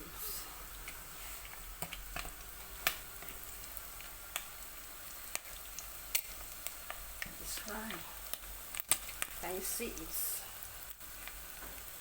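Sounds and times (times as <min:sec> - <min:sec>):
food sizzling in hot oil: 0:00.0 - 0:12.0
oil popping and crackling: 0:00.0 - 0:12.0.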